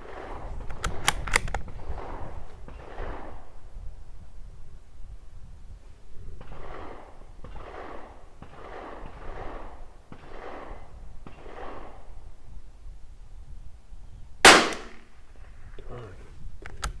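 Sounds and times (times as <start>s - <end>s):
rifle shot: 6.4s - 12.1s, 14.4s - 15.2s.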